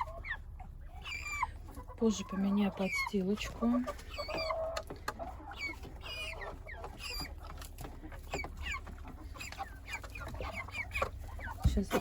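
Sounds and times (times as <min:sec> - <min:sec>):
chickens peeping: 0:00.0 - 0:12.0.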